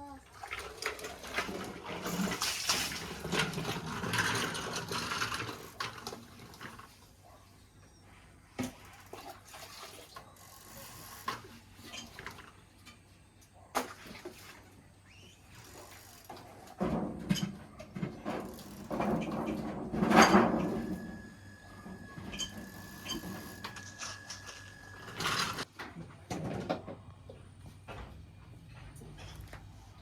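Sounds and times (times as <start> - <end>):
water pouring and splashing: 0.2 - 7.0, 8.6 - 10.2.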